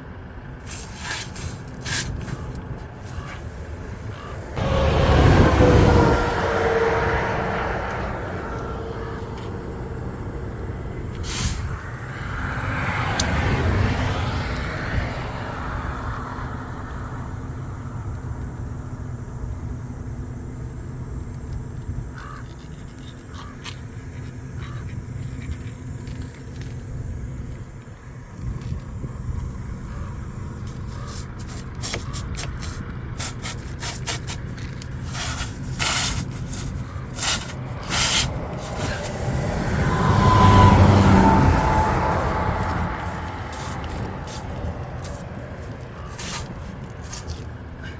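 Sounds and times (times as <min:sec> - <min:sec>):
vehicle engine idling: 0:00.0 - 0:47.9
scraping and rubbing: 0:30.7 - 0:47.9.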